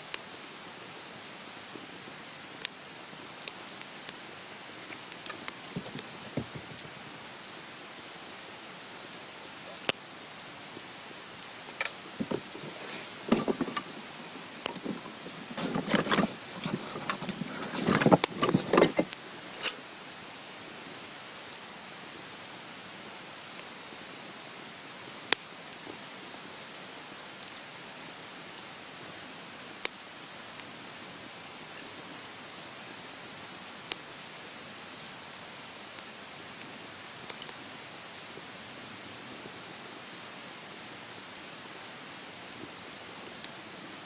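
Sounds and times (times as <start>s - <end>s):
steady hiss: 0.0s - 44.0s
objects rustling and clattering: 5.3s - 6.9s, 11.7s - 20.2s.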